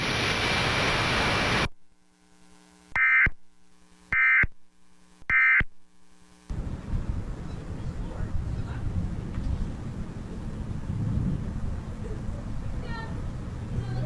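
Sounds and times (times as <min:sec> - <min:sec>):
radio static hiss: 0:00.0 - 0:06.6.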